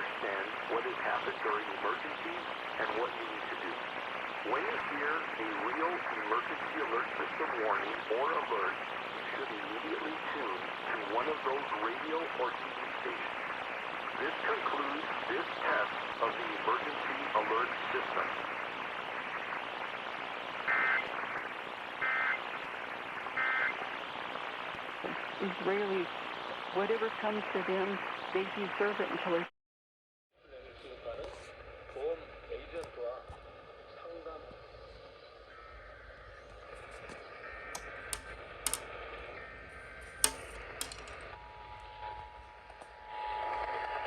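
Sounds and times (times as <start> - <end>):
radio hiss: 0.0 - 29.5, 30.4 - 44.0
sharp clicks and crackles: 36.4 - 39.3, 39.9 - 41.4.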